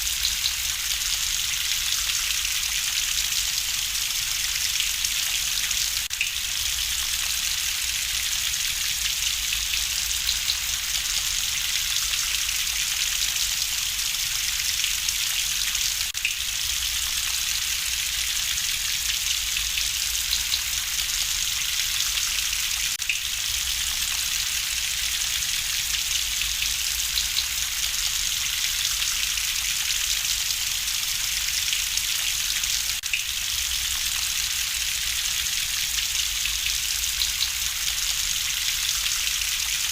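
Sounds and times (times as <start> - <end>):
steady rain hiss: 6.0 - 14.9.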